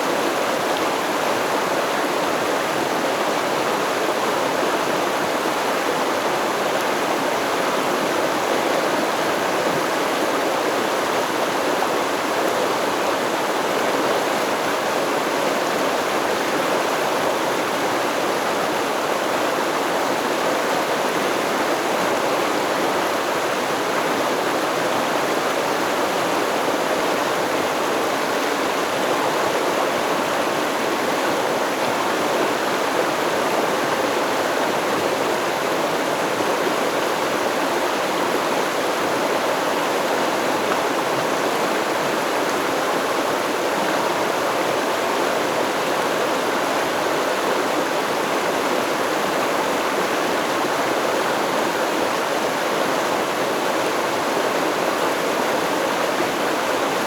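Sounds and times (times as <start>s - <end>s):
water babbling over rocks: 0.0s - 57.0s.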